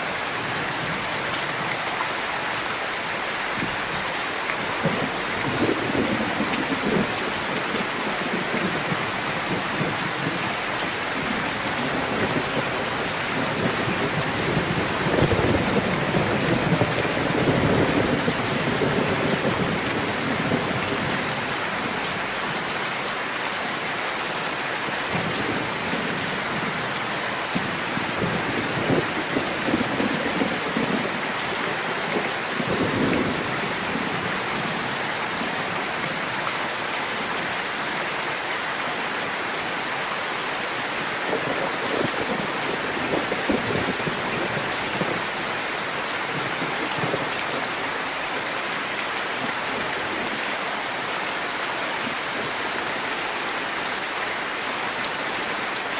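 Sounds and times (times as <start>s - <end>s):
steady rain: 0.0s - 55.9s
low thunder rumbles: 11.2s - 22.0s, 27.6s - 35.5s.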